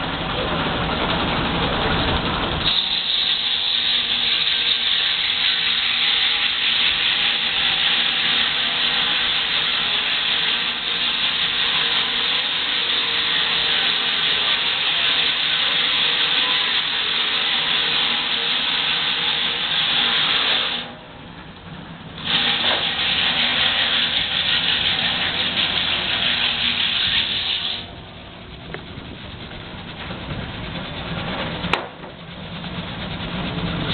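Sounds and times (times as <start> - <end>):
saw blade cutting a log: 2.6 - 21.0, 22.2 - 27.9.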